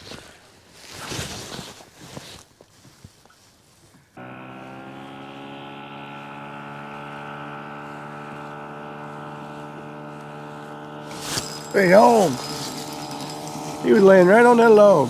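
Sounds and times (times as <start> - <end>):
electric motor whine: 4.2 - 14.7.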